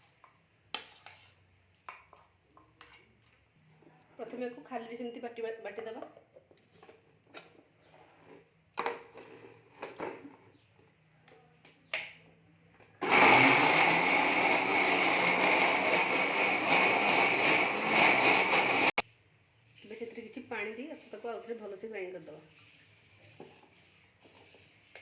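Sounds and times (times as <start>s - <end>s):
electric mixer grinder running: 13.0s - 19.0s.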